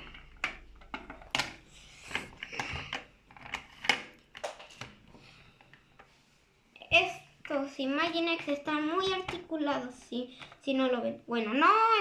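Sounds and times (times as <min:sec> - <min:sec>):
plastic toys clicking and knocking: 0:00.0 - 0:06.1, 0:08.5 - 0:10.8.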